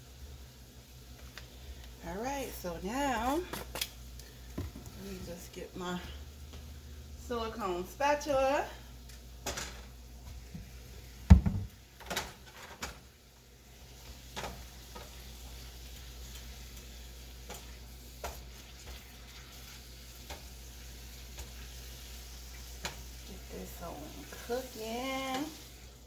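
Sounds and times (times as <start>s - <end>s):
chicken sizzling in a frying pan: 0.0s - 26.0s
heavy clunk: 11.3s - 11.8s
spatula stirring: 14.0s - 25.8s.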